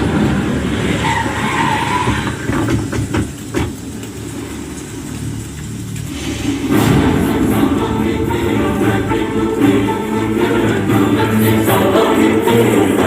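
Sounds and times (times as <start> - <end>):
action film soundtrack: 0.0 - 13.0
sharp hits: 6.2 - 8.4.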